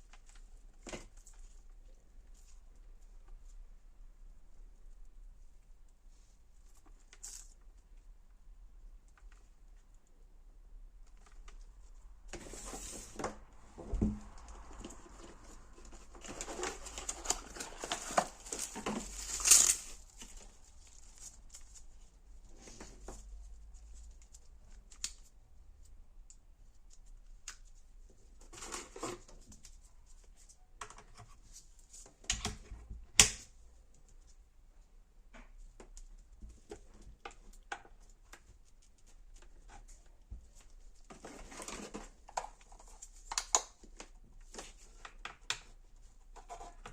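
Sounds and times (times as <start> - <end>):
crinkling packaging: 14.4 - 22.2.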